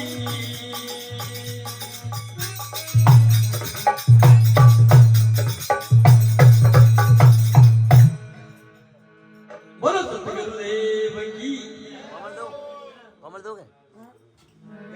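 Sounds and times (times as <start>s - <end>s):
fast hand percussion: 0.0s - 8.6s.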